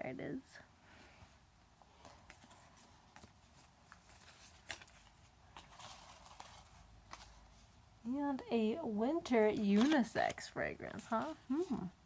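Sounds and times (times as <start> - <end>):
cosmetic packaging clicks and rustles: 2.0 - 7.6, 9.5 - 11.9.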